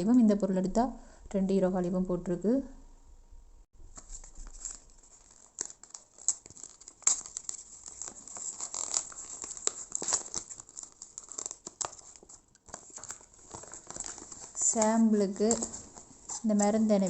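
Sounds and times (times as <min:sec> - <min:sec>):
packaging crinkling and rustling: 0:03.9 - 0:17.0.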